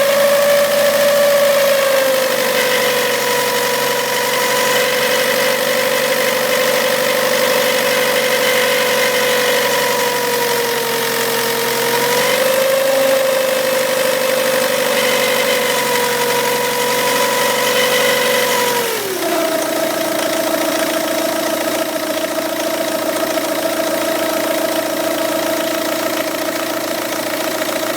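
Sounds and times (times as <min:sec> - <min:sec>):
diesel engine idling: 0:19.3 - 0:27.9.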